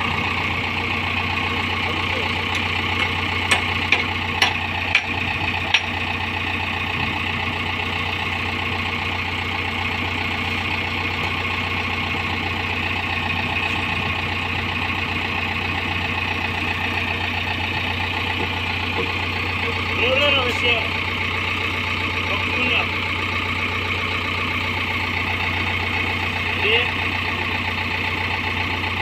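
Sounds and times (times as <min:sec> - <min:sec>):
diesel engine idling: 0:00.0 - 0:29.0
sharp knocks: 0:02.5 - 0:06.0.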